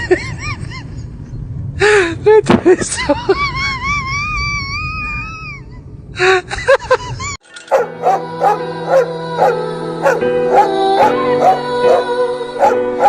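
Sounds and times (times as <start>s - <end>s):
dog yelping: 7.7s - 13.0s.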